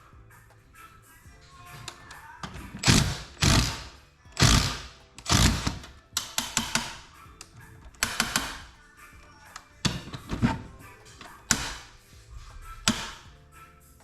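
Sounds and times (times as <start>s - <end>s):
background music with strong beats: 0.0s - 14.0s
rapid sharp clicking: 2.5s - 8.8s.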